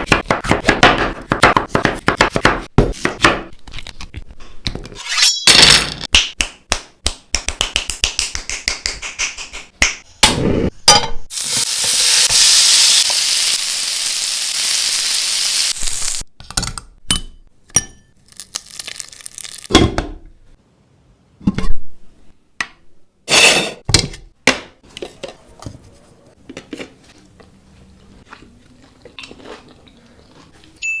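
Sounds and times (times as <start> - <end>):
loud sizzling hiss: 11.3 - 16.2.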